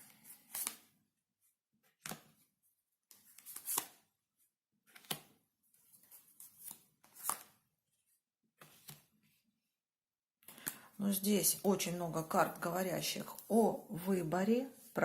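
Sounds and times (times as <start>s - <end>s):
cards rustling while shuffled: 0.0s - 0.9s, 3.1s - 4.1s, 4.9s - 7.6s, 8.6s - 9.2s
cards slapping on a table: 2.0s - 2.4s, 4.9s - 5.4s, 6.6s - 7.6s.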